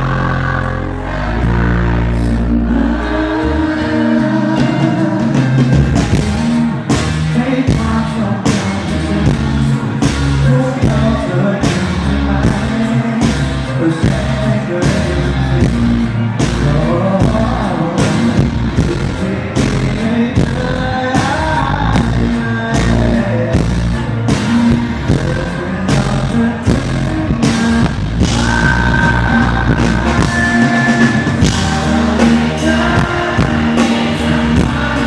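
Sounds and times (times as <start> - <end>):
boomy bass: 0.0 - 35.0
live pop-rock band playing: 0.0 - 35.0
person singing: 0.0 - 35.0
drum hits: 25.9 - 35.0.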